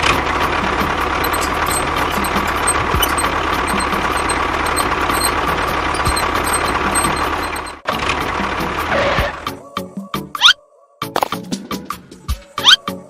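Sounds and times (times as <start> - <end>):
small engine idling: 0.0 - 8.8
light regular ticking: 1.2 - 7.8.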